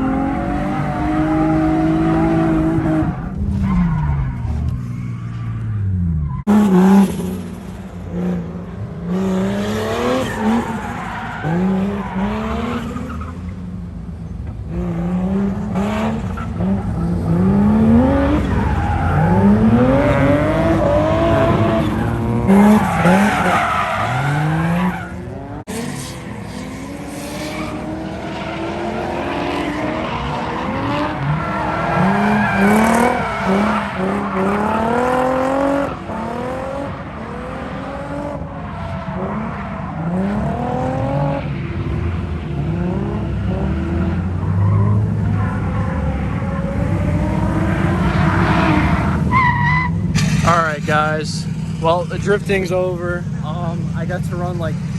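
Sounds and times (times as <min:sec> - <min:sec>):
car engine revving: 0:00.0 - 0:54.9
tyres skidding and squealing: 0:00.0 - 0:54.9.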